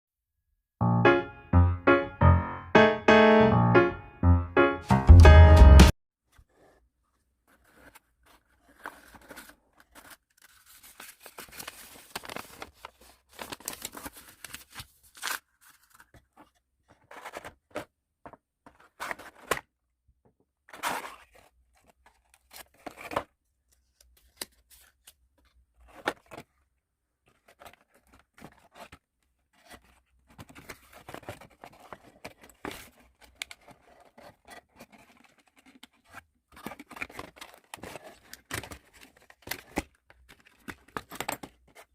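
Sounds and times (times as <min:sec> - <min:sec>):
packaging rustling and tearing: 0:07.5 - 0:17.8, 0:27.2 - 0:41.9.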